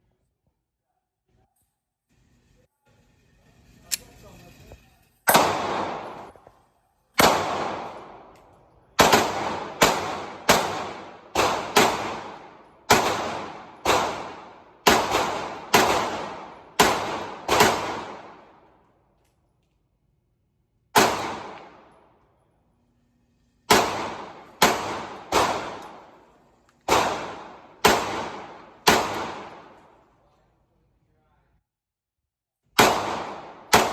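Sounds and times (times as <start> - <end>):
gunshots: 5.3 - 6.4, 7.2 - 8.3, 9.0 - 18.7, 20.9 - 22.1, 23.6 - 30.0, 32.7 - 33.9.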